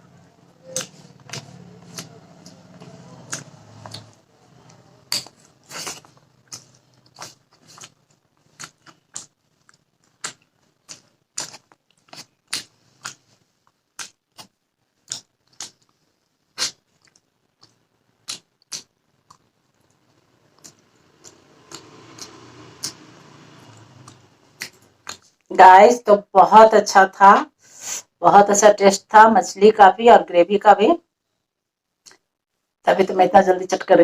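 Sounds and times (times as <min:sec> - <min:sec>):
person chewing food: 0:00.6 - 0:25.5
wet mouth clicks and smacks: 0:03.3 - 0:04.2, 0:05.1 - 0:13.2, 0:13.9 - 0:16.0, 0:16.6 - 0:20.0, 0:24.0 - 0:25.5, 0:32.0 - 0:32.3.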